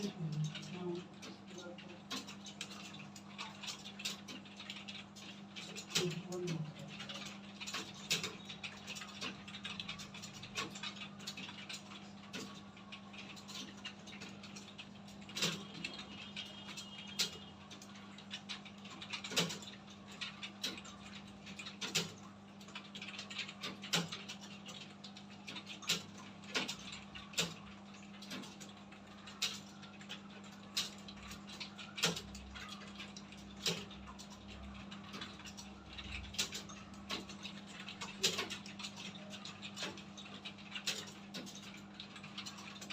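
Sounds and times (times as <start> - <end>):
keyboard typing clatter: 0.0 - 42.9.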